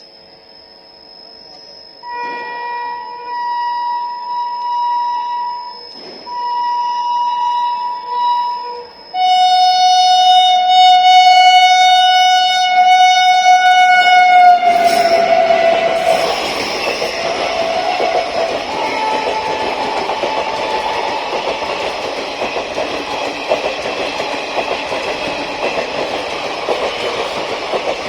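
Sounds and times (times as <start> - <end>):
locomotive horn blasts: 2.0 - 21.6
train rushing past: 10.6 - 28.0.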